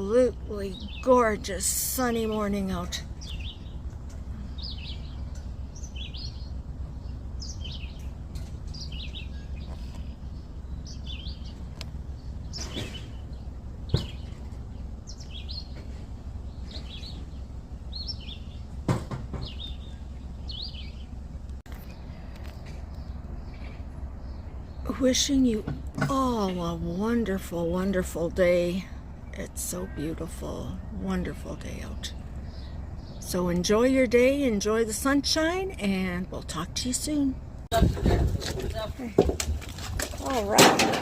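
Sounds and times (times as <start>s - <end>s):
songbirds chirping: 0.0s - 41.0s
steady low rumble: 0.0s - 41.0s
sharp knocks: 18.8s - 19.6s.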